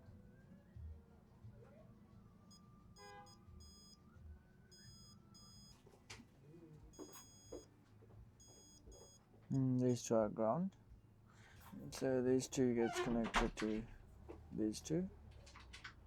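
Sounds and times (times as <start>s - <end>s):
multimeter beeps: 2.5s - 4.0s, 4.7s - 5.8s, 6.9s - 7.7s, 8.4s - 9.2s.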